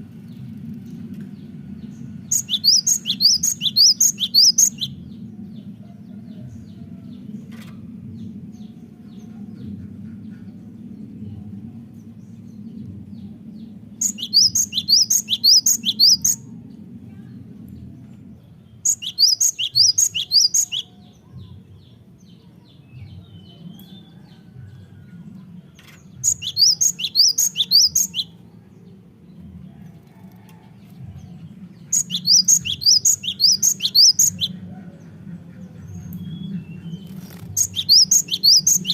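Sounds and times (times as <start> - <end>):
steady low hum: 0.0 - 38.9
bird singing rapid high notes: 18.9 - 20.9, 26.2 - 28.3.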